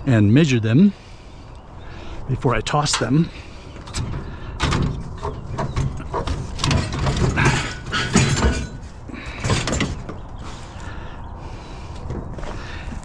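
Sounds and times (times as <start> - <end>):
wire shelving rattling: 2.7 - 10.3.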